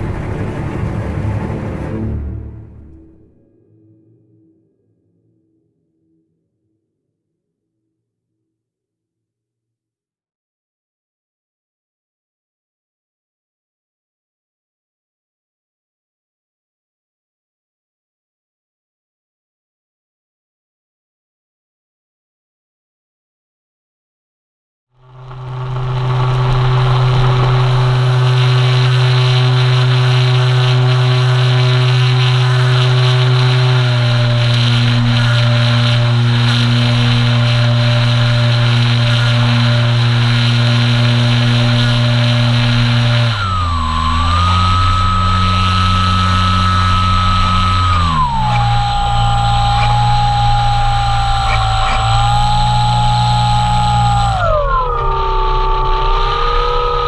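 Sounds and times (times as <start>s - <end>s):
model plane motor droning: 0.0s - 2.1s, 25.0s - 57.0s.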